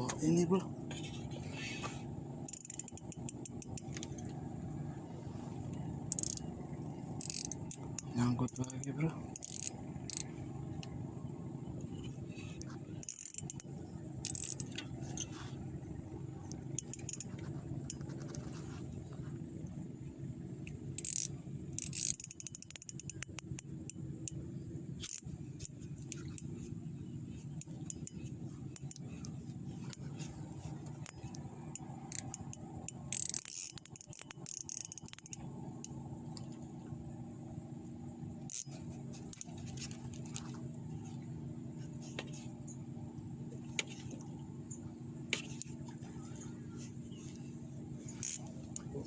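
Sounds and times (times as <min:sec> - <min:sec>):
steady low hum: 0:00.0 - 0:49.0
fishing reel clicks and rattles: 0:02.4 - 0:04.4, 0:06.0 - 0:10.9, 0:11.9 - 0:15.3, 0:16.7 - 0:18.5, 0:20.7 - 0:26.7, 0:27.3 - 0:36.8, 0:38.4 - 0:41.2, 0:48.0 - 0:49.0.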